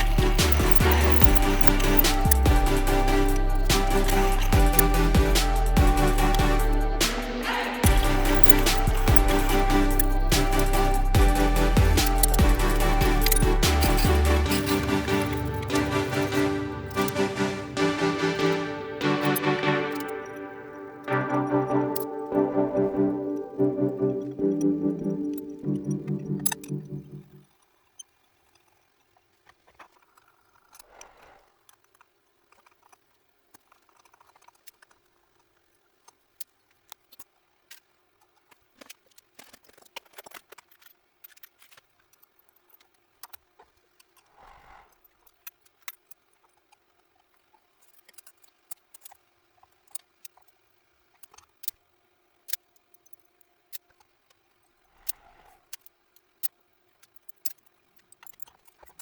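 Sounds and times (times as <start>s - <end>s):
metal parts and tools clinking: 0.0s - 6.8s, 7.8s - 17.2s
sharp clicks: 0.0s - 17.2s.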